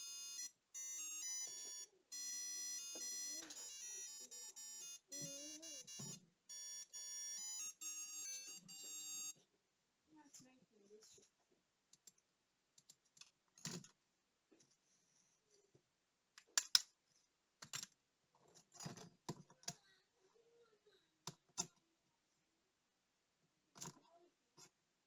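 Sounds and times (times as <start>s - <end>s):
small tool clicks and taps: 16.4s - 16.9s.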